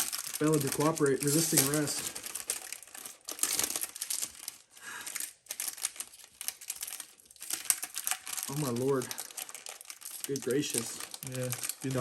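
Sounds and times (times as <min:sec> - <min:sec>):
plastic wrapping crinkling: 0:00.0 - 0:12.0.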